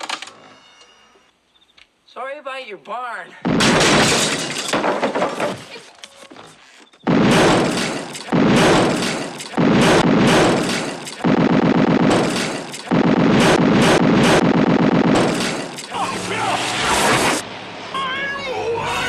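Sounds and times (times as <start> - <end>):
loud distorted sound: 7.1 - 17.4.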